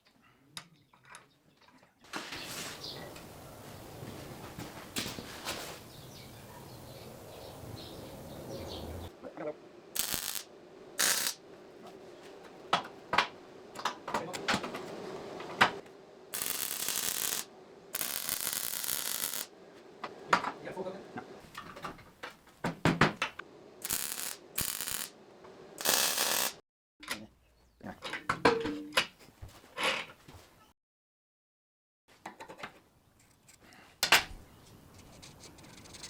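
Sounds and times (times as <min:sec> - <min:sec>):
short bursts of hissing: 0:10.0 - 0:11.4, 0:16.3 - 0:19.5, 0:23.8 - 0:25.1, 0:25.8 - 0:26.6.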